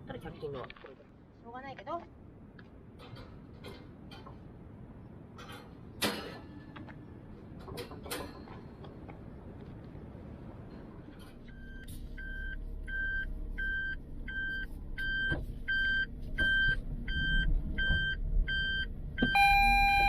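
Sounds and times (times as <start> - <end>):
car engine running: 9.1 - 20.0
car warning beeps: 11.4 - 20.0.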